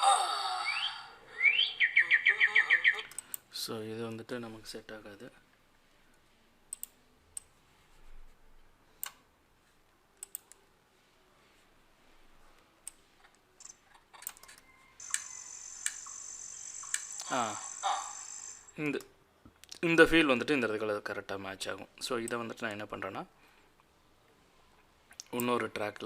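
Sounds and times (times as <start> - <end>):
computer mouse clicks: 6.7 - 7.5, 10.2 - 10.6, 13.6 - 17.3
cricket chirring: 15.0 - 18.8.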